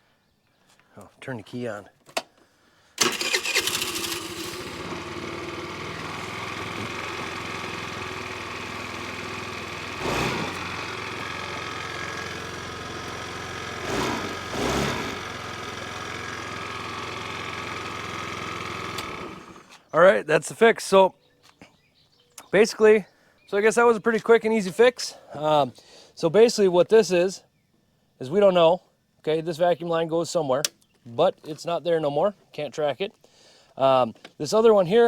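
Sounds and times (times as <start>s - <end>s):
scooter engine idling: 3.0s - 19.7s
scooter engine revving: 3.0s - 19.7s.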